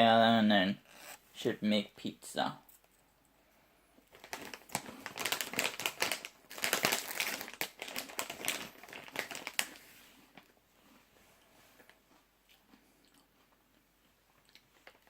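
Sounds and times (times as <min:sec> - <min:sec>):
plastic packet crinkling: 0:04.1 - 0:09.8.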